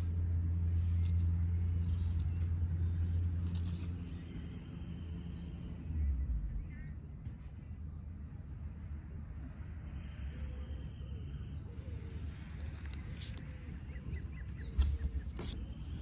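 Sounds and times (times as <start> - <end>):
cards rustling: 0.0 - 4.2, 12.4 - 16.0
low background hum: 0.0 - 16.0.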